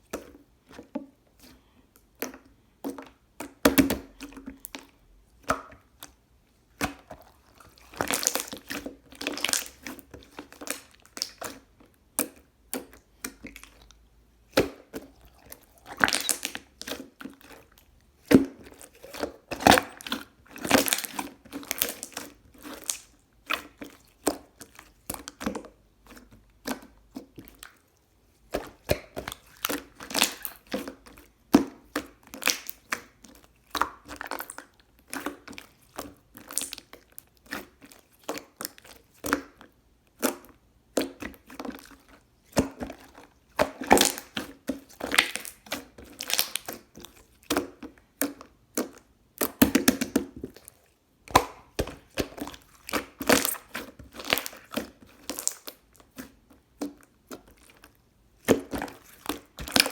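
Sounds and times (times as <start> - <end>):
crinkling and crunching: 6.8 - 11.7, 15.1 - 25.6, 41.0 - 59.9.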